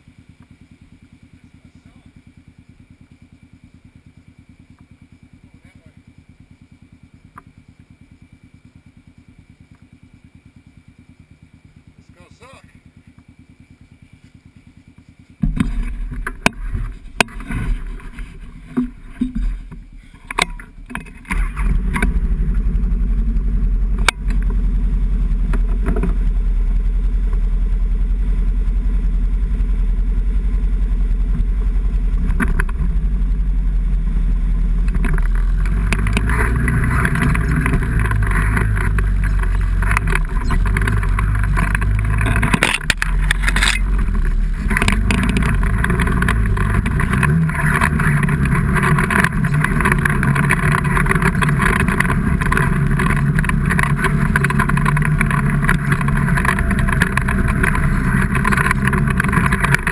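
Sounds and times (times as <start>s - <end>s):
vehicle engine running: 0.0s - 59.9s
irregular knocks and thumps: 15.4s - 27.5s, 31.2s - 33.4s, 34.8s - 59.9s.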